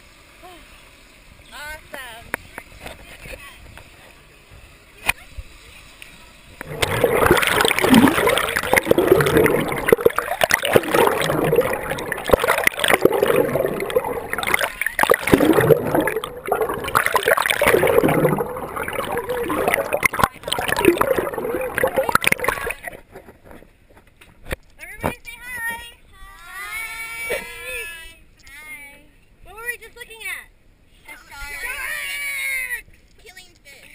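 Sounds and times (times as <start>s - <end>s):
water splashing and sloshing: 6.6s - 24.7s.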